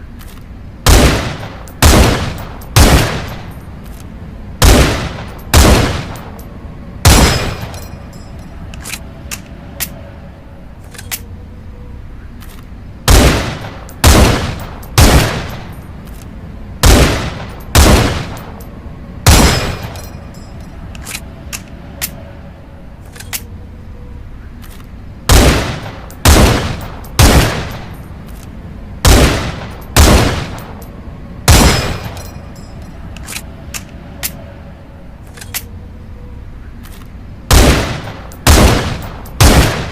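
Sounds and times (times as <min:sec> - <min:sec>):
rifle shots with echo: 0:00.8 - 0:03.5, 0:04.6 - 0:06.4, 0:07.0 - 0:07.7, 0:13.1 - 0:15.7, 0:16.8 - 0:18.6, 0:19.2 - 0:20.0, 0:25.3 - 0:27.9, 0:29.0 - 0:30.8, 0:31.5 - 0:32.2, 0:37.5 - 0:39.9.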